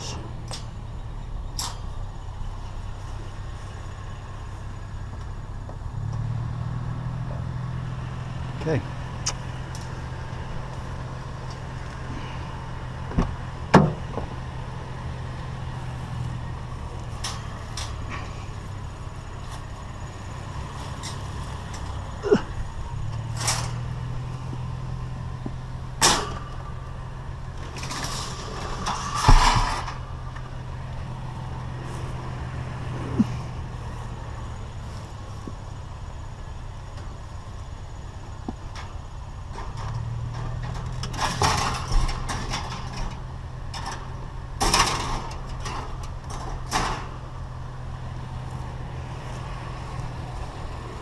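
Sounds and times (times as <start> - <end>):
truck engine idling: 0.0 - 51.0
scrap metal clanking: 20.7 - 25.0, 27.4 - 30.4, 39.6 - 47.2.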